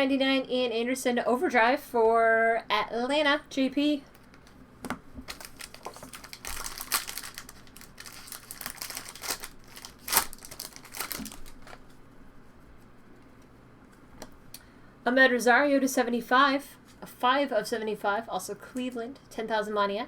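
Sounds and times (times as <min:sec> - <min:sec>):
card wrappers crinkling: 0:05.2 - 0:12.0.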